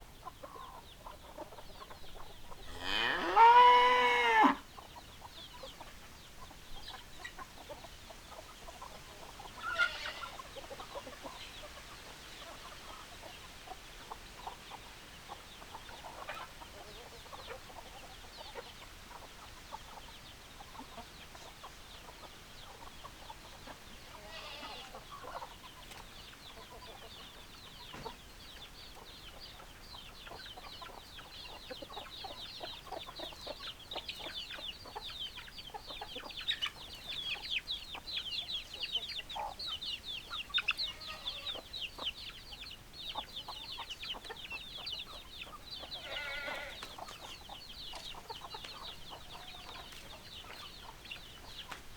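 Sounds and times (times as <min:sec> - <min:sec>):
chickens clucking: 0:00.0 - 0:51.9.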